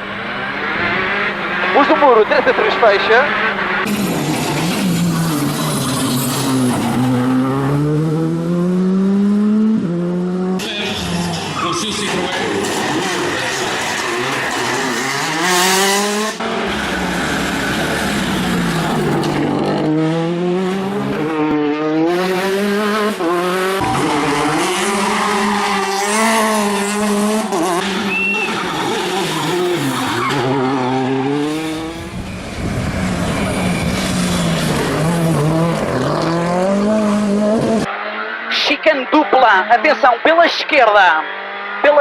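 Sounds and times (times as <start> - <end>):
rally car engine accelerating: 0.0 - 39.8, 41.2 - 42.0
tyre and road noise: 0.0 - 42.0.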